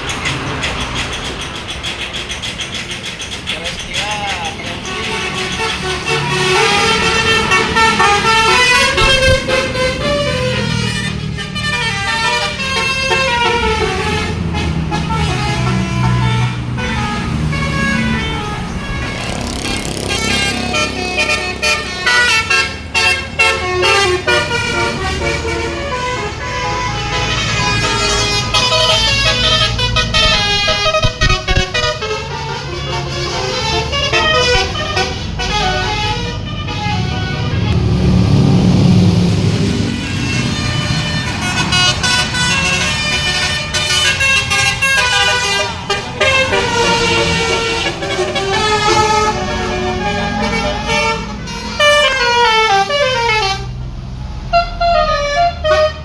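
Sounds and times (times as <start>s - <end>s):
bus engine running: 0.0s - 56.0s
road rumble: 0.0s - 56.0s
bus horn playing a tune: 4.8s - 56.0s
thumps: 8.2s - 10.1s, 28.4s - 32.2s.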